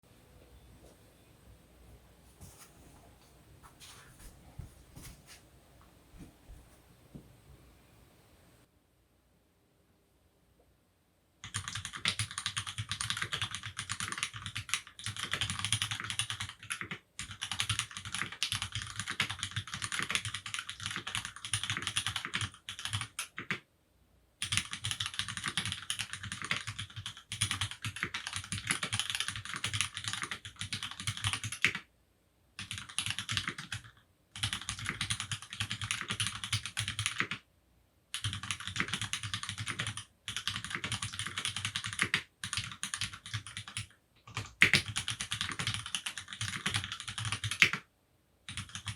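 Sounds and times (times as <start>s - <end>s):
fast typing on keyboard: 11.4s - 23.7s, 24.4s - 31.9s, 32.6s - 37.4s, 38.1s - 47.9s, 48.5s - 48.9s.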